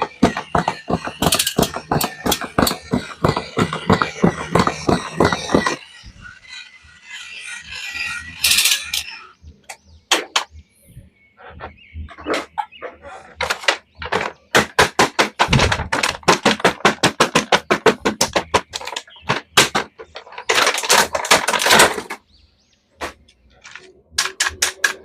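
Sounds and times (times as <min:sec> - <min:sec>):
rapid sharp clicks and taps: 0:00.0 - 0:05.8, 0:13.4 - 0:22.1.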